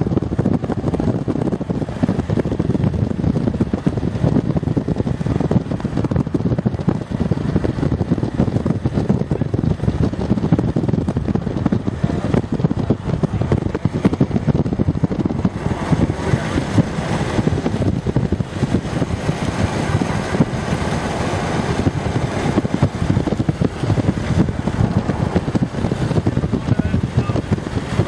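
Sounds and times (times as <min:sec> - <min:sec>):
gusting wind buffeting microphone: 0:00.0 - 0:28.0
moving vehicle rumble: 0:00.0 - 0:28.0.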